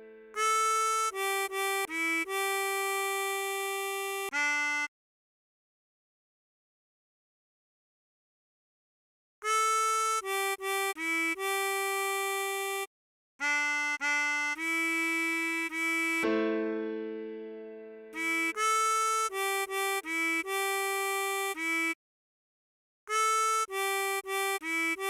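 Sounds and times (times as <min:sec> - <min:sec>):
harmonica chord: 0:00.0 - 0:04.9, 0:09.4 - 0:22.0, 0:23.1 - 0:25.0
harmonica melody: 0:00.0 - 0:04.9, 0:09.4 - 0:16.7, 0:17.8 - 0:22.0, 0:23.1 - 0:25.0.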